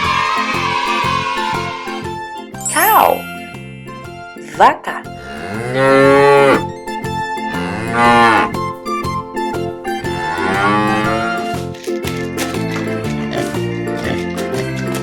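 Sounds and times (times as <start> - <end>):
light background music: 0.0 - 15.0
cow mooing: 5.2 - 6.7, 7.4 - 8.7, 10.1 - 11.5.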